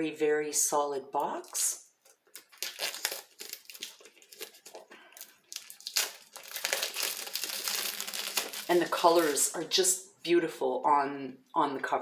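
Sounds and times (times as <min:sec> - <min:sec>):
wrapping crinkling: 0:02.0 - 0:09.6
wrapping ripping: 0:02.2 - 0:09.6.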